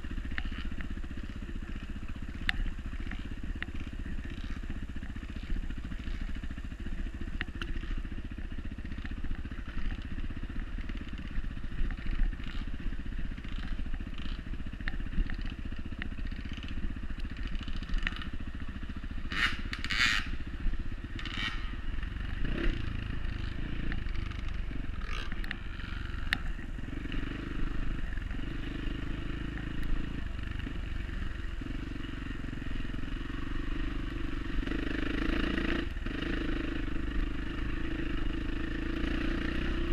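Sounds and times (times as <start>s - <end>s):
dirt bike engine running: 0.0s - 39.9s.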